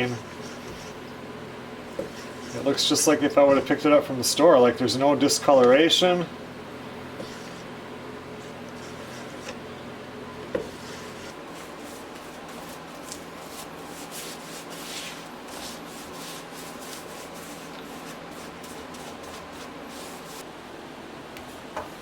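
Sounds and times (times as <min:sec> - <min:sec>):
paintbrush scratching on wood: 0:00.0 - 0:01.1, 0:01.9 - 0:03.8, 0:10.6 - 0:20.4.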